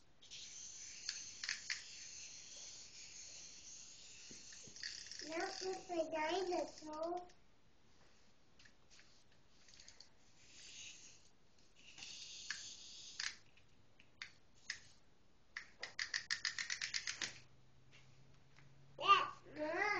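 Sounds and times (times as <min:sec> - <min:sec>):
windup toy clicking: 0:01.0 - 0:02.0, 0:04.5 - 0:05.9, 0:06.5 - 0:07.4, 0:11.8 - 0:13.4, 0:15.6 - 0:17.3.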